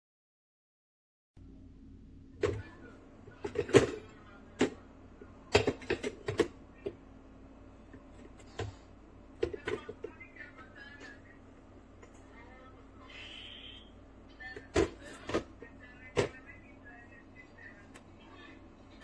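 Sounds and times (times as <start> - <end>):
steady low hum: 1.4 - 19.0.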